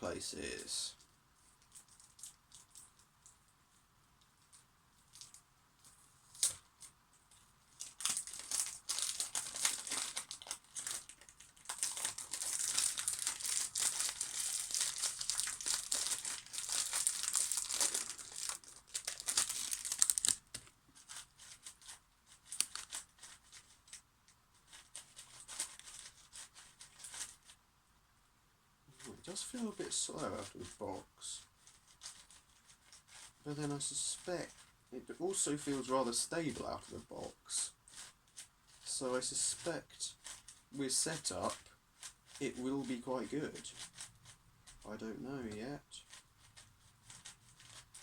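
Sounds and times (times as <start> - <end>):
plastic packaging crinkling and tearing: 6.2 - 24.0.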